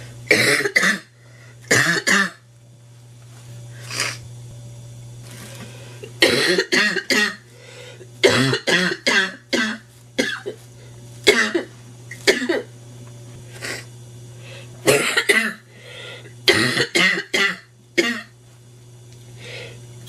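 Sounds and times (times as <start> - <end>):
woman coughing: 0.3 - 1.1, 1.7 - 2.4, 6.2 - 7.4, 8.2 - 10.6, 11.2 - 12.7, 14.8 - 15.7, 16.4 - 18.4.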